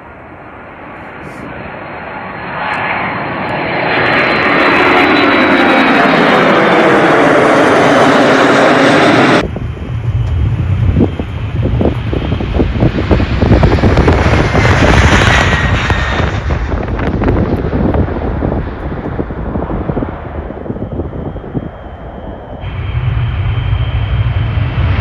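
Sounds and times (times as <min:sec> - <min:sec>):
jet aircraft passing close: 0:00.0 - 0:25.0
jet engine whine: 0:00.0 - 0:25.0
low gusty rumble: 0:04.0 - 0:25.0
wind on microphone: 0:09.2 - 0:25.0.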